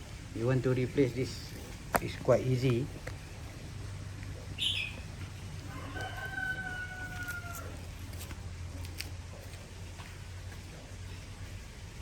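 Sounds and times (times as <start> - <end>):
rooster crowing: 5.6 - 7.9.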